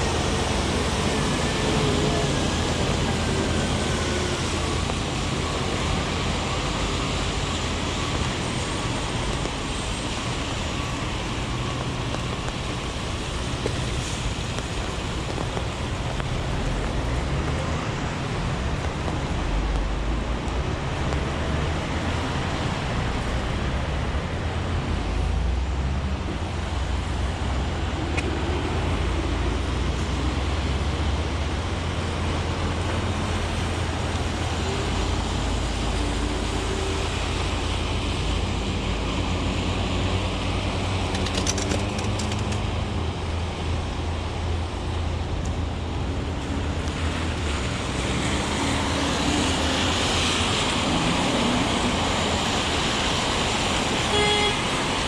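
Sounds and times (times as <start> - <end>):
heavy rain hissing: 0.0 - 19.4, 26.4 - 41.2, 46.9 - 55.0
rumble of passing vehicles: 0.0 - 55.0
tyres hissing on wet road: 0.0 - 55.0
vehicle engine hum: 0.0 - 55.0.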